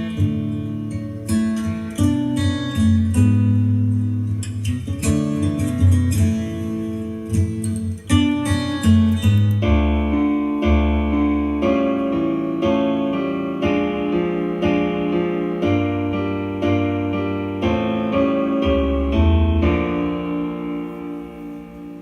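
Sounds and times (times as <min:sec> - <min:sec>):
piano music through speakers: 0:00.0 - 0:22.0
strong bass line: 0:09.5 - 0:22.0.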